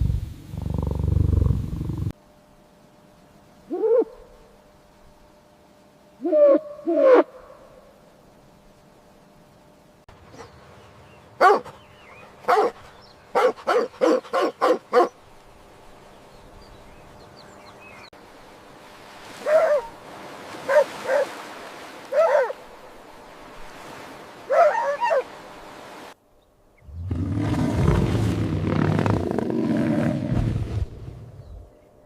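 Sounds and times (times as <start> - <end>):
dog barking: 11.4 - 11.8, 12.4 - 15.1, 19.4 - 20.0, 20.7 - 21.3, 22.1 - 22.6, 24.5 - 25.3.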